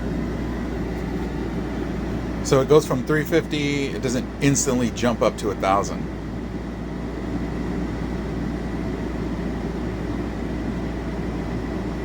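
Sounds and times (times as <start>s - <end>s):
air conditioner running: 0.0s - 12.0s.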